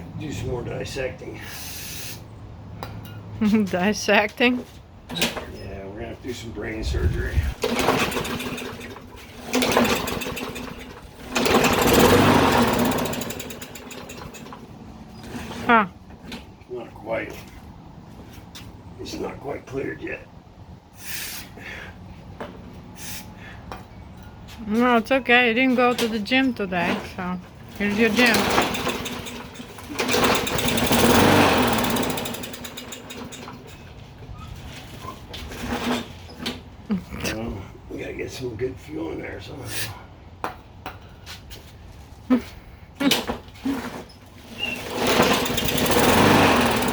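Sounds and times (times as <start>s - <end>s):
lawn mower engine cranking and sputtering: 6.8s - 17.8s, 24.2s - 36.8s, 43.0s - 46.9s.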